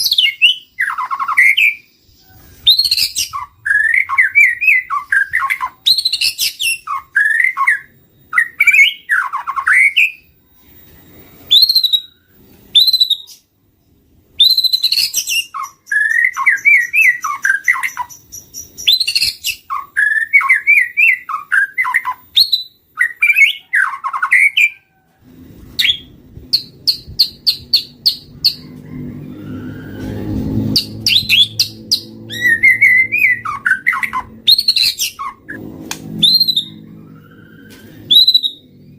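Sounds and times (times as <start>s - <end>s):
bird song whistles and trills: 0.0s - 25.0s, 25.8s - 38.9s.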